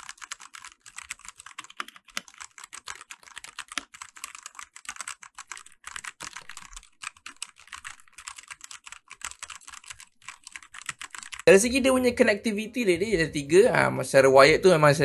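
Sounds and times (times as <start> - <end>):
mechanical keyboard typing: 0.0 - 11.5.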